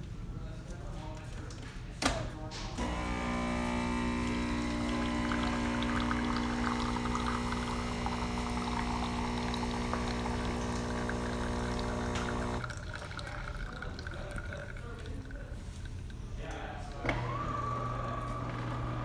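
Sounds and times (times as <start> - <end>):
espresso machine pump humming: 2.8 - 16.2, 16.9 - 19.0
coffee trickling and dripping: 2.8 - 19.0.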